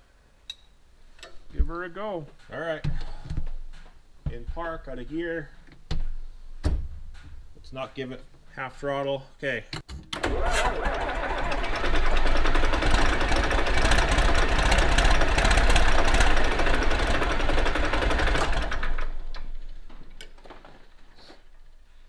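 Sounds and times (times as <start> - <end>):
diesel engine cranking: 10.2 - 21.8.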